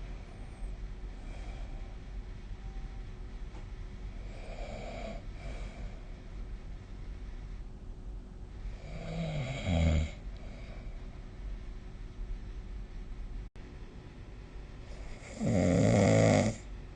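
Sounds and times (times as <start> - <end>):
person snoring: 4.2 - 6.0, 8.7 - 10.8, 14.9 - 16.7.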